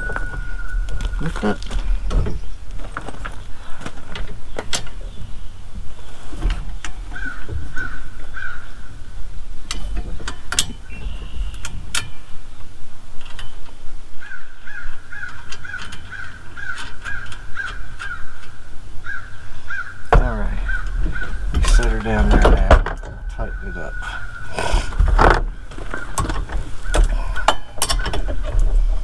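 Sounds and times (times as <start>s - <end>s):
crow cawing: 7.1s - 9.0s, 14.2s - 28.4s
metal parts and tools clinking: 20.1s - 29.0s.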